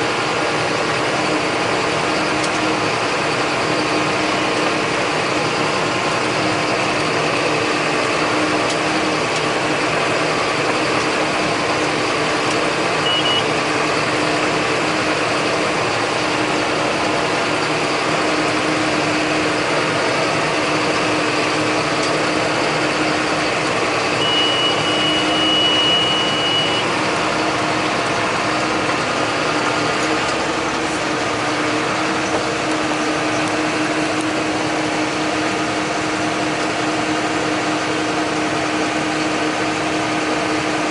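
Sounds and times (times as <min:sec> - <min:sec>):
tractor diesel engine running: 0:00.0 - 0:40.9
high electronic beep: 0:13.0 - 0:13.6, 0:24.2 - 0:27.0.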